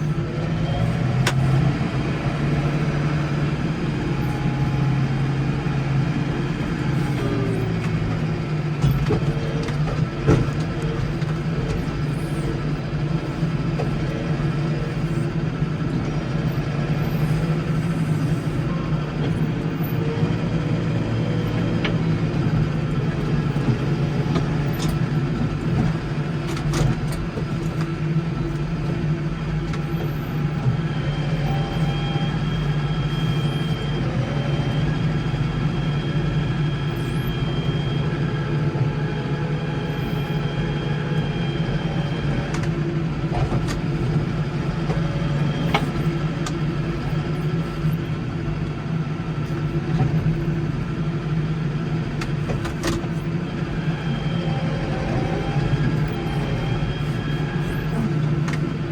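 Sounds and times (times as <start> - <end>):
garden tractor engine running: 0.0 - 58.9.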